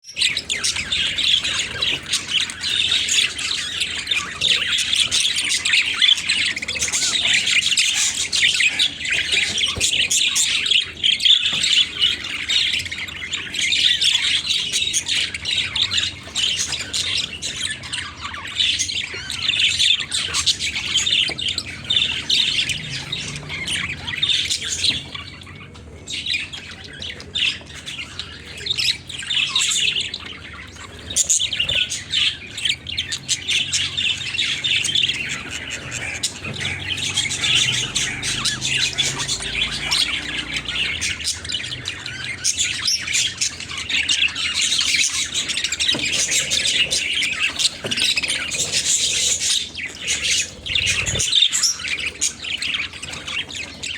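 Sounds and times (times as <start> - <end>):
budgerigars chattering and squawking: 0.0 - 53.9.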